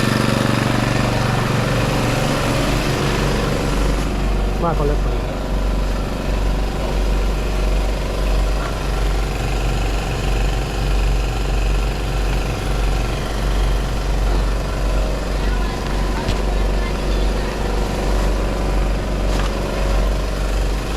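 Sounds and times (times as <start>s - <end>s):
engine rumbling: 0.0s - 20.9s.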